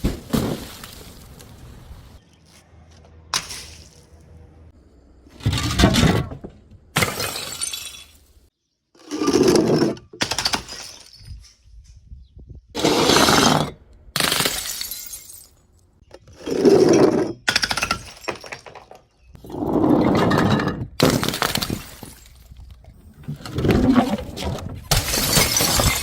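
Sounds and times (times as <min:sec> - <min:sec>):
glass bottles shattering: 0:07.0 - 0:08.3, 0:10.2 - 0:11.5, 0:13.4 - 0:15.6, 0:16.8 - 0:19.2, 0:19.8 - 0:22.7, 0:23.3 - 0:26.0.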